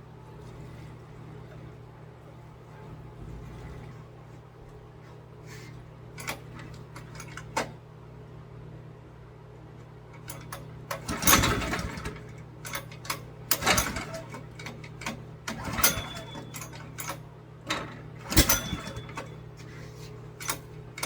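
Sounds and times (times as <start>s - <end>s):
recoil starter cord pulls: 10.2s - 19.4s
engine cranking: 10.3s - 17.2s, 18.2s - 19.3s.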